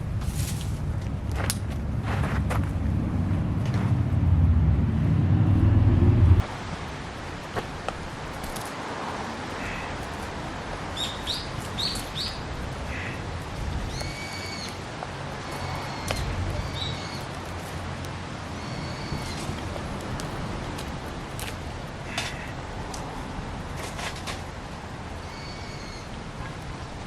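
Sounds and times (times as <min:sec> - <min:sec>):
wood fire crackling: 0:06.4 - 0:25.3
birds chirping and calling: 0:11.0 - 0:14.8, 0:15.4 - 0:17.4, 0:18.6 - 0:19.6.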